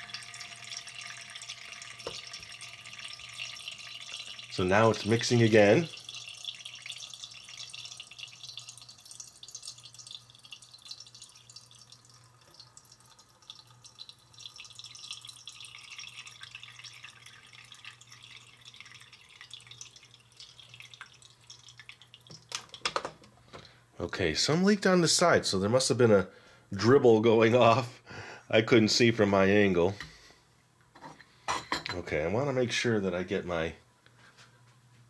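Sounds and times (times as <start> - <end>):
liquid dripping into carafe: 0.0 - 23.1.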